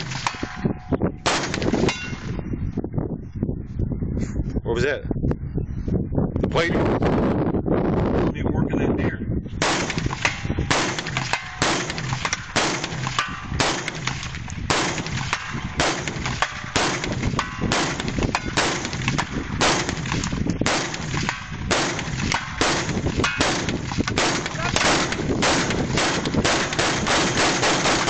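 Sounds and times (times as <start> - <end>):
rifle single shots: 0.0 - 2.4, 9.6 - 28.0.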